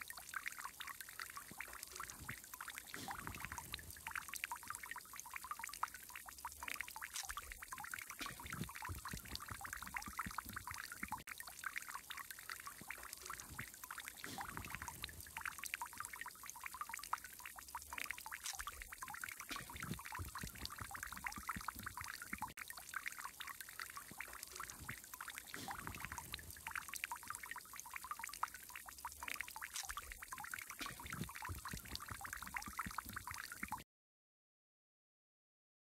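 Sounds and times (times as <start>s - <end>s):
fountain water splashing: 6.8s - 16.9s, 19.3s - 33.7s.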